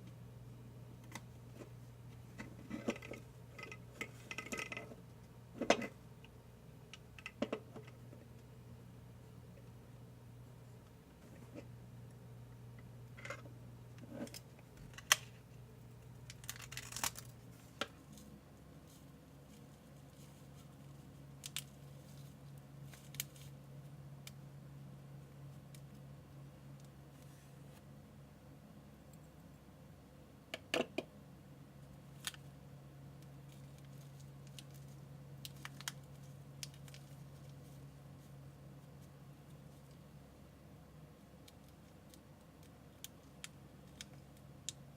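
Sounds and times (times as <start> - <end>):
low steady hum: 0.0 - 44.9
small objects clicking and tapping: 5.6 - 8.0
packaging rustling: 16.3 - 17.7.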